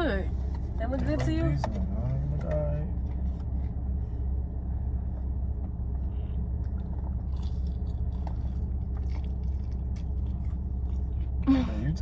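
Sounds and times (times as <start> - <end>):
low hum: 0.0 - 12.0
person chewing chicken wings: 6.7 - 11.4.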